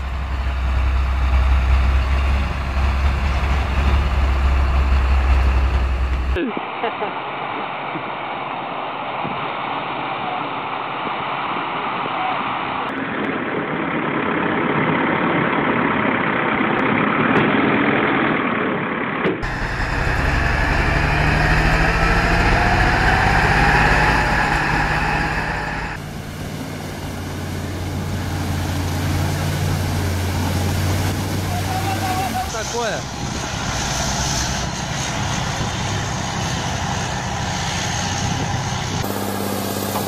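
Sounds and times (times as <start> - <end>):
rising engine whine: 0.0 - 6.4, 19.4 - 40.0
heavy vehicle engines running: 0.0 - 8.5, 19.0 - 40.0.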